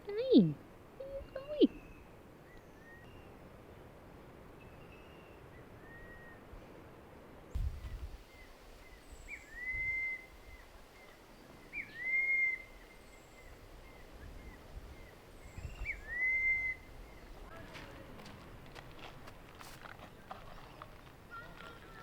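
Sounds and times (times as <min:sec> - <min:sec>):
whistled call: 0:04.9 - 0:06.5, 0:08.4 - 0:10.7, 0:11.7 - 0:12.8, 0:15.6 - 0:16.9.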